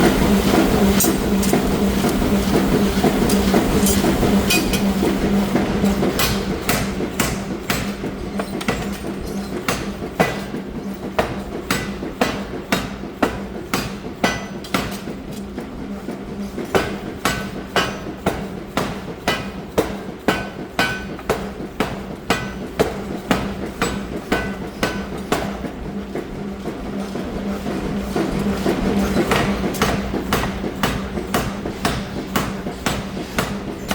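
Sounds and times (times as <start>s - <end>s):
machine hum: 0.0s - 11.6s
hammer striking hot steel: 0.0s - 15.5s, 16.6s - 25.7s, 29.3s - 33.9s.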